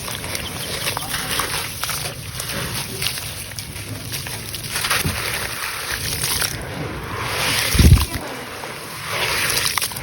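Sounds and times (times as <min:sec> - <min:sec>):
wet sloshing with crackles: 0:00.0 - 0:10.0.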